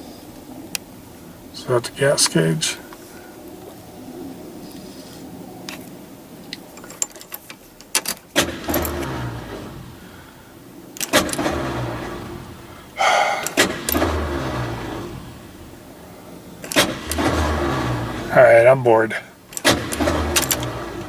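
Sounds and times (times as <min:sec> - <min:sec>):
starter cranking engine: 0:06.9 - 0:21.0
starter click: 0:11.0 - 0:12.0, 0:13.0 - 0:14.9, 0:16.6 - 0:17.7, 0:19.5 - 0:21.0
key clicks: 0:13.0 - 0:14.1, 0:19.5 - 0:20.8.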